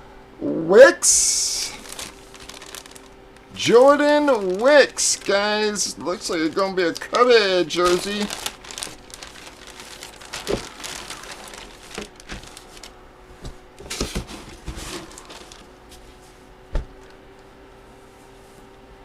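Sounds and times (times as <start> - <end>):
plastic packaging crinkling: 1.7 - 16.1.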